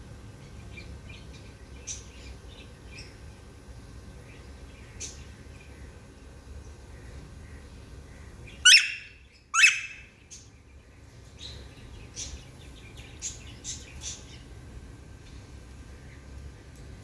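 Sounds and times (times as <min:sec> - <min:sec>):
parrot chirping: 0:08.6 - 0:10.1
parrot calling: 0:08.6 - 0:10.2.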